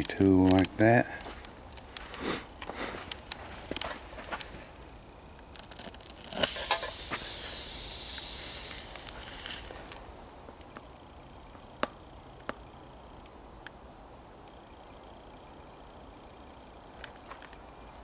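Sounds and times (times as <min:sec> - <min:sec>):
sharp ticks: 0:05.4 - 0:10.0
small crackles: 0:05.4 - 0:10.0
air hissing from tire: 0:05.7 - 0:10.0.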